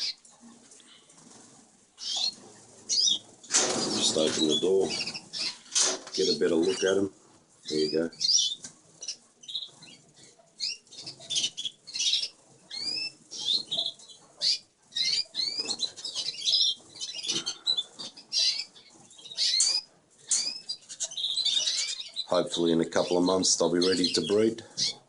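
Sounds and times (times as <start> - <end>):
wings fluttering: 0.0 - 7.0
canaries chirping: 0.0 - 25.0.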